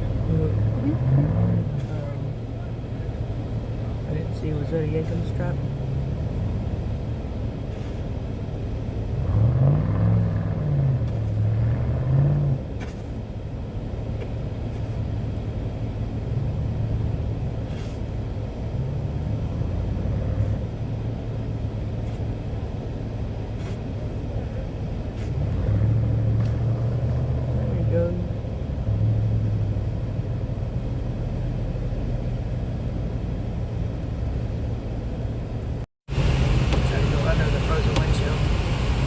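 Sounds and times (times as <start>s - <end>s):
vehicle engine revving: 0.0s - 2.4s, 9.0s - 13.2s, 16.2s - 22.2s, 25.1s - 39.0s.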